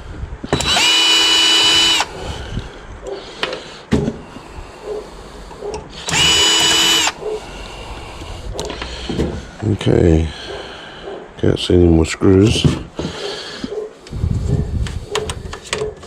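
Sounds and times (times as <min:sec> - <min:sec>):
power drill whining: 0:00.5 - 0:02.5, 0:05.9 - 0:09.0
handling clicks and knocks: 0:15.1 - 0:16.0.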